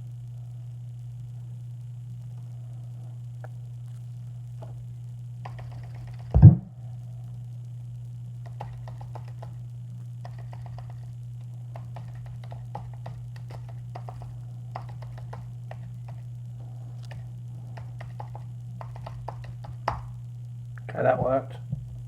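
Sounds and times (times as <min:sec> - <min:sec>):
low hum: 0:00.0 - 0:22.0
keyboard typing: 0:05.4 - 0:06.4, 0:08.4 - 0:09.6, 0:10.2 - 0:20.2.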